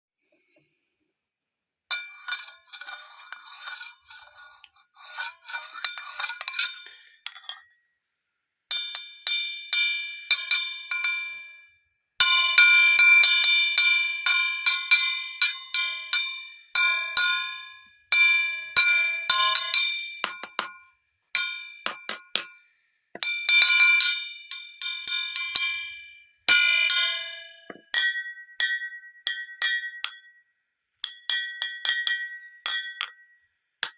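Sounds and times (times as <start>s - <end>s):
glass bottles tapped ringing: 27.0s - 30.4s, 31.0s - 33.9s.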